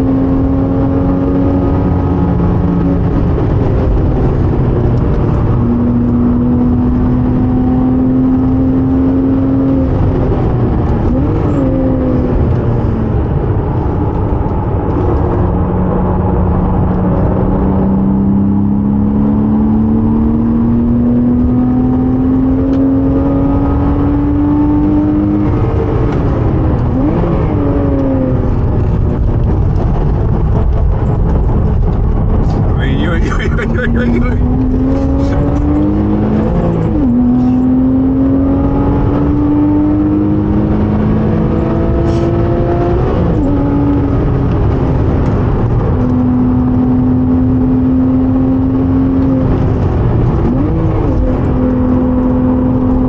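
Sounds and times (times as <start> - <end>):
car engine pulling hard: 0.0 - 53.0
road and wind noise: 0.0 - 53.0.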